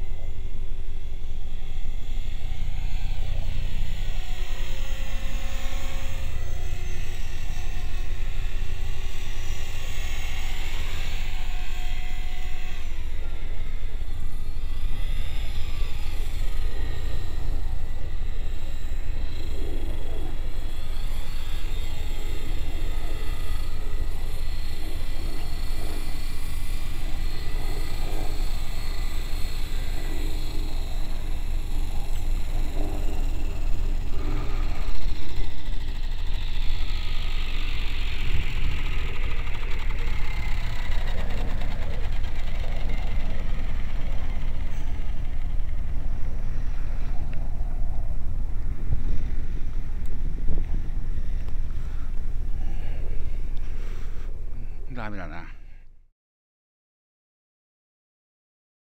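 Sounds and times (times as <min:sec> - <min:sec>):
rc helicopter rotor whine: 0:00.0 - 0:55.8
wind rumble on microphone: 0:13.1 - 0:54.9.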